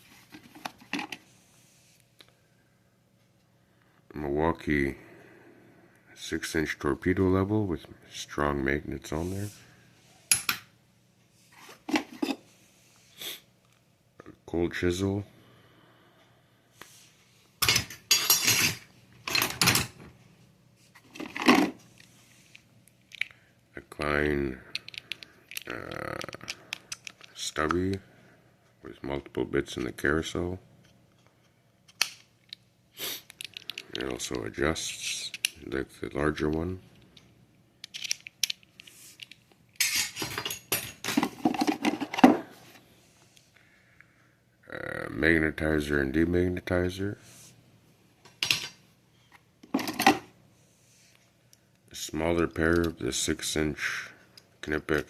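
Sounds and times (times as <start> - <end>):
metal tools clinking: 17.6 - 20.0, 39.8 - 42.4.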